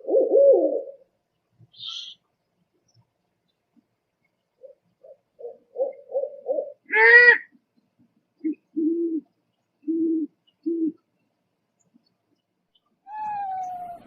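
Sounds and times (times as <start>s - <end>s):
owl hooting: 1.7s - 2.2s, 13.1s - 14.0s.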